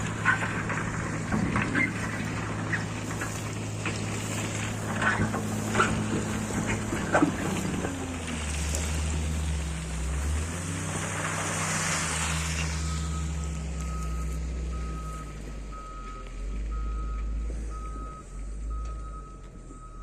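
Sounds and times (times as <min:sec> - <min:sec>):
heavy vehicle engine running: 0:00.0 - 0:20.0
reversing alarm beeping: 0:12.7 - 0:20.0.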